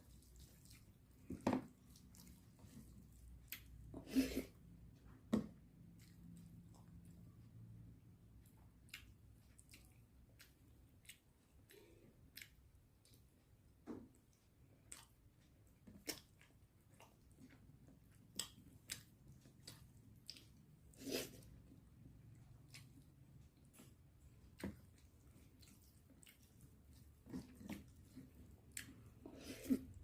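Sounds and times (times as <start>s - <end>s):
wet chewing and lip smacks: 8.3s - 29.3s.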